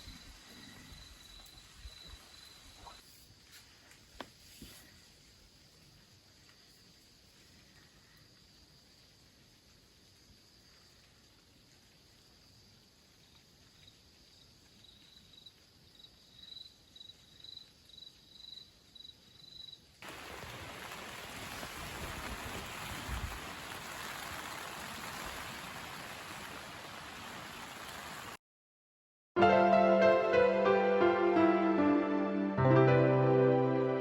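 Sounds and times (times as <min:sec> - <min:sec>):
cricket chirping: 0:00.0 - 0:21.0.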